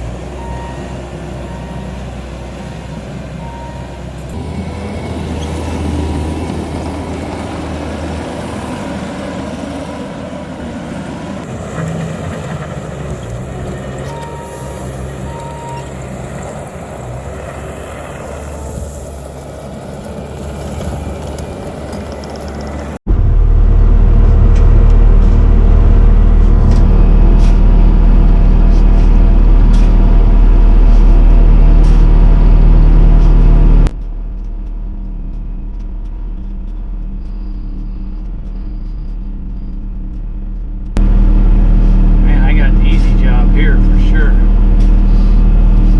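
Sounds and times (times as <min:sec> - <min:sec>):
diesel engine running: 0:00.0 - 0:45.9
short high beeps: 0:03.4 - 0:04.4.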